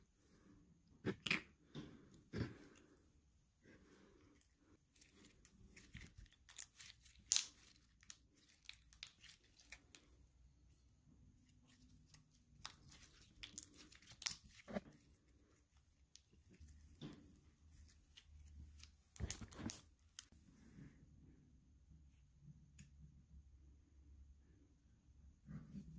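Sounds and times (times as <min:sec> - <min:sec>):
slime crackling and popping: 0:05.3 - 0:10.1, 0:12.5 - 0:14.8.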